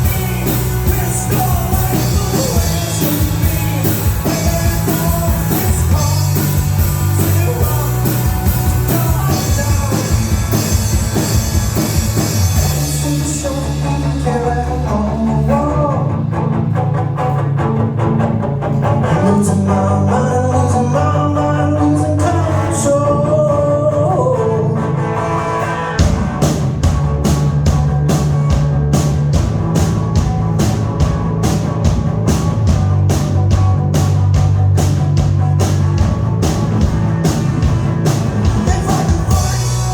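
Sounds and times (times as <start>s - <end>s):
person singing: 0.0s - 10.8s, 12.6s - 16.4s, 19.0s - 25.0s, 38.4s - 39.9s
drums and cymbals: 0.0s - 14.8s, 25.6s - 39.9s
live rock band playing: 0.0s - 39.9s.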